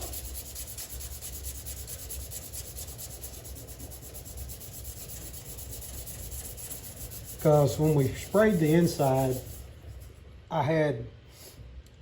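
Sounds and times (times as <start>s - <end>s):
hand sanding metal bodywork: 0.0s - 10.2s.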